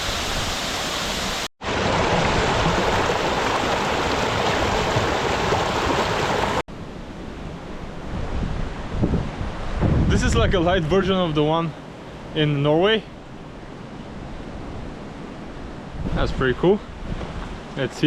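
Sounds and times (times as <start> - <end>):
waterfall rushing: 0.0 - 6.6.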